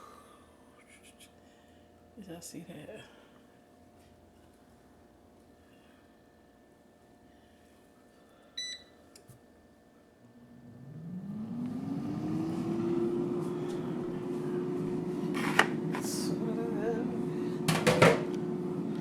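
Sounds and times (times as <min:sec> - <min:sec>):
air fryer beep: 0:08.6 - 0:09.0, 0:10.7 - 0:19.0
air fryer fan humming: 0:10.2 - 0:19.0.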